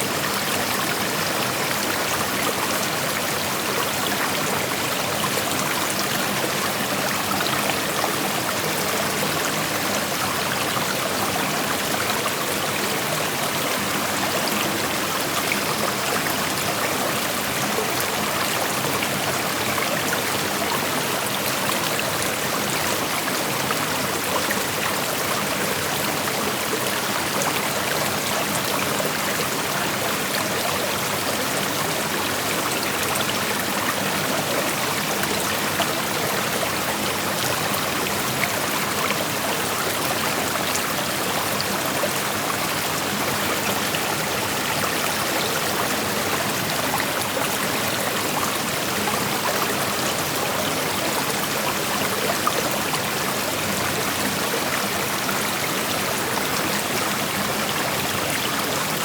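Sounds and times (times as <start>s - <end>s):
creek water flowing over rocks: 0.0s - 59.0s.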